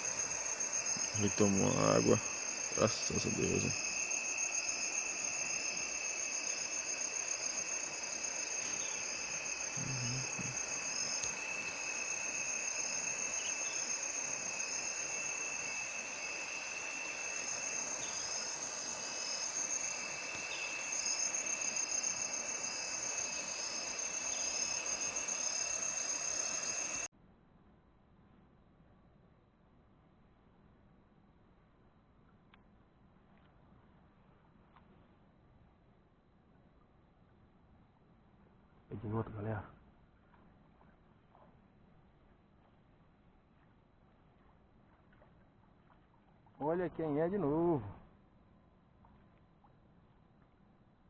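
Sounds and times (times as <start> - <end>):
outdoor hiss: 0.0 - 27.1
shrill insect chorus: 0.0 - 27.1.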